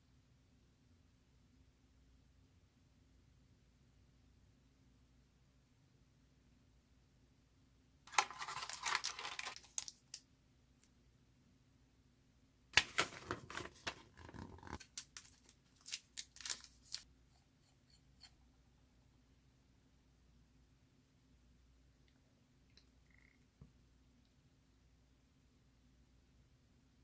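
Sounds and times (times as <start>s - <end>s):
packaging crinkling and tearing: 8.1s - 10.2s, 12.8s - 17.0s.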